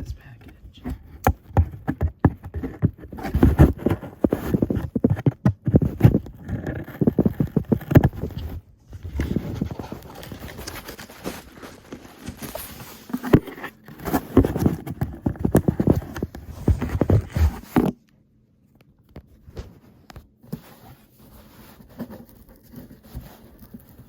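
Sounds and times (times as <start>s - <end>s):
packaging rustling and tearing: 2.6s - 17.8s.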